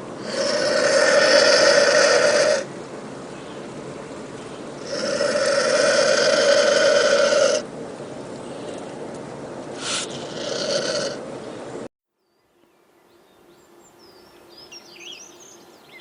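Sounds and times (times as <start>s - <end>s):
vulture hissing: 0.2s - 2.7s, 4.4s - 7.6s, 9.8s - 11.2s.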